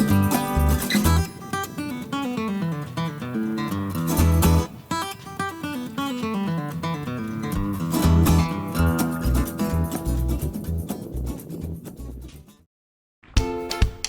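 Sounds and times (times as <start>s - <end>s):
bass line: 0.0s - 1.2s, 7.6s - 11.3s
acoustic guitar melody: 0.0s - 12.6s, 13.4s - 14.0s.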